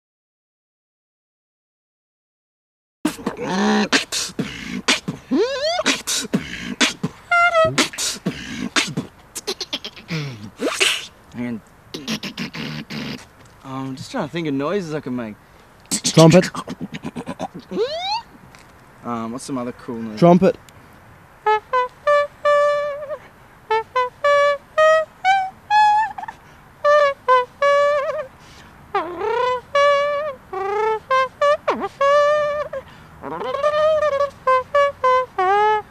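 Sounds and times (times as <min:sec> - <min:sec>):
beatboxing mouth sound effects: 0:03.1 - 0:11.2, 0:11.9 - 0:14.2, 0:15.9 - 0:18.4, 0:21.5 - 0:28.3, 0:28.9 - 0:35.9
vocal trumpet imitation: 0:03.1 - 0:11.2, 0:11.9 - 0:13.3, 0:15.9 - 0:18.4, 0:21.4 - 0:35.9.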